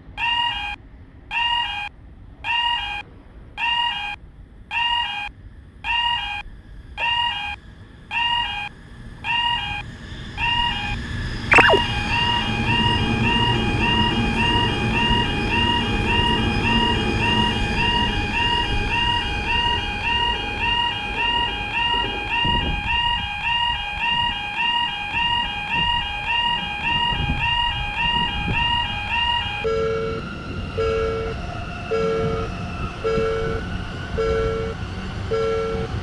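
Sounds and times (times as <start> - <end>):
sharp brief falling sound: 11.5 - 11.9.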